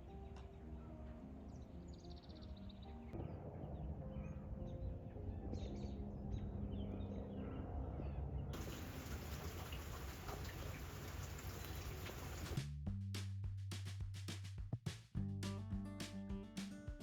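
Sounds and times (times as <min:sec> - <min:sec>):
faint chirping calls: 0:04.1 - 0:12.6
steady even hiss: 0:08.6 - 0:12.6.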